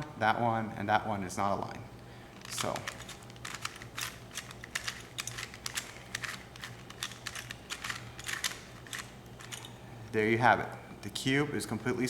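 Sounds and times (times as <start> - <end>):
puzzle cube plastic clicking: 2.4 - 9.6.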